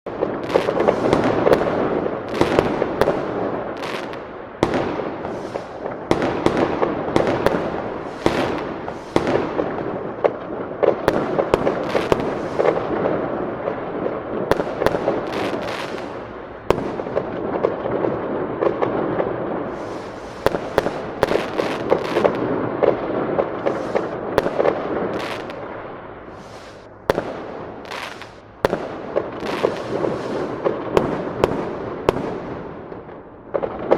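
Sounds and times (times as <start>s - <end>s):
fireworks bursting and crackling: 0.1s - 33.9s.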